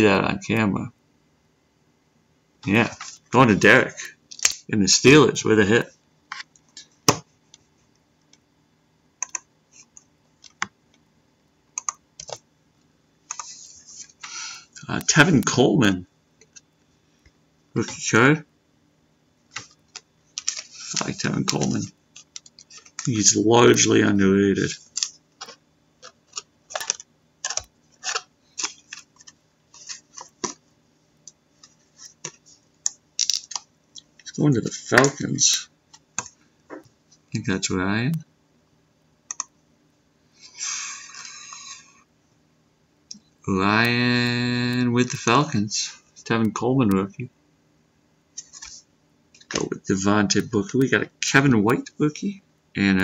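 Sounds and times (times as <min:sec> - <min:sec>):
cards clicking and tapping: 0:19.5 - 0:23.9, 0:24.9 - 0:30.6
cards swishing and clicking: 0:20.4 - 0:23.9.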